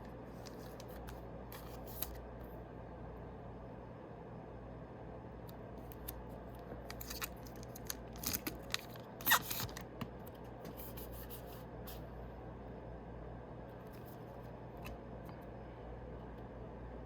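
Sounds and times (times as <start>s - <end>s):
foil wrapper crinkling: 6.8s - 9.8s
foil wrapper ripping: 6.9s - 9.8s.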